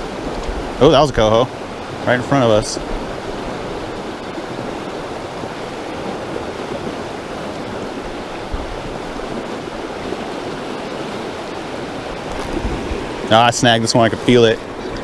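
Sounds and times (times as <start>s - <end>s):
river water rushing: 0.0s - 15.0s.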